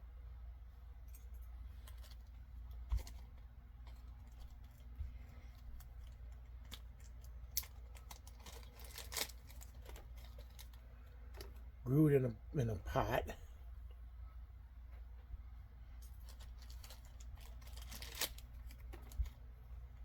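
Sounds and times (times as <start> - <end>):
low steady hum: 0.0 - 20.0
packaging rustle: 1.8 - 11.6, 16.0 - 19.5.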